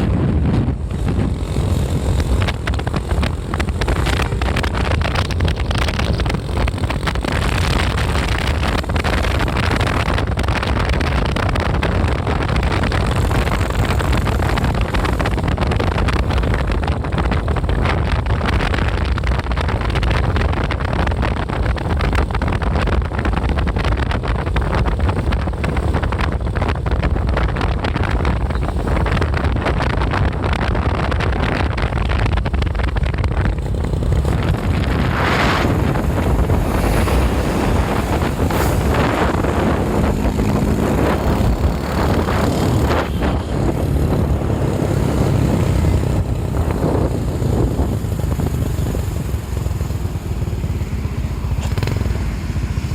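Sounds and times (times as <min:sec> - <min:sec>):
vehicle engines rumbling: 0:00.0 - 0:52.9
wind buffeting microphone: 0:00.0 - 0:52.9.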